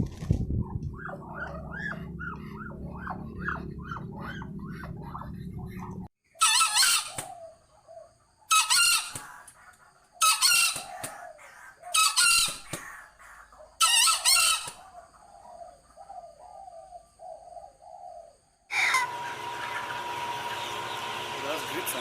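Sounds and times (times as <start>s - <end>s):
chicken squawking: 0.6s - 15.5s, 18.7s - 20.9s
chicken clucking: 18.7s - 22.0s.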